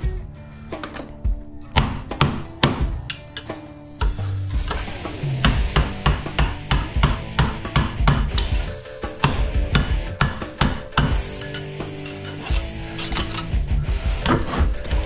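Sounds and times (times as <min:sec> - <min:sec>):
hammer striking metal: 0:01.7 - 0:13.5.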